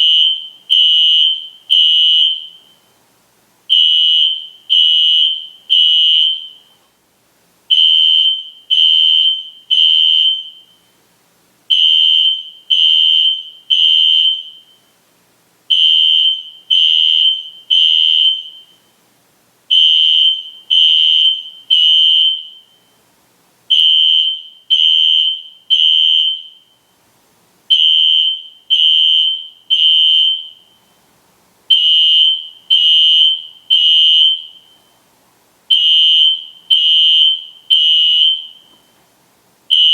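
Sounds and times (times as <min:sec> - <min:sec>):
fire alarm horn beeping: 0:00.0 - 0:02.8, 0:03.7 - 0:06.7, 0:07.7 - 0:10.9, 0:11.7 - 0:14.9, 0:15.7 - 0:18.9, 0:19.7 - 0:22.9, 0:23.7 - 0:26.9, 0:27.7 - 0:30.9, 0:31.7 - 0:35.0, 0:35.7 - 0:38.9.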